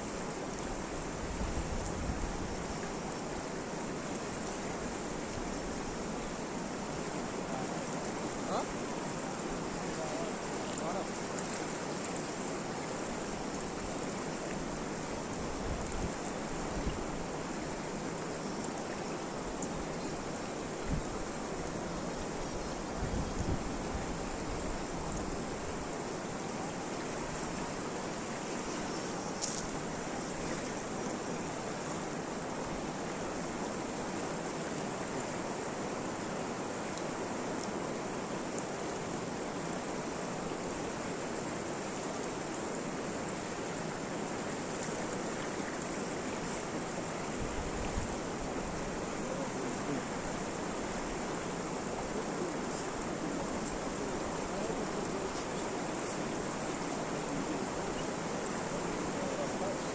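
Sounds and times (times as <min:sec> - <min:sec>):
water rushing: 0:00.0 - 0:59.9
faint ticks: 0:19.6 - 0:19.8, 0:28.7 - 0:29.8.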